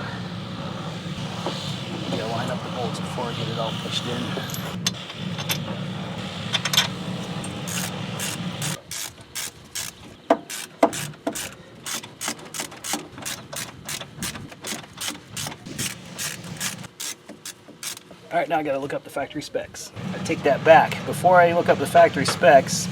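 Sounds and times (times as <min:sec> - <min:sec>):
ratchet wrench clicking: 0:07.7 - 0:18.0.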